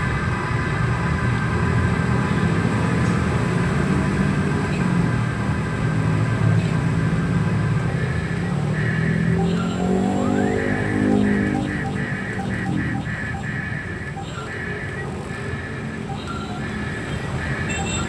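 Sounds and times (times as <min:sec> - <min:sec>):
rough engine-like drone: 0:08.6 - 0:18.0.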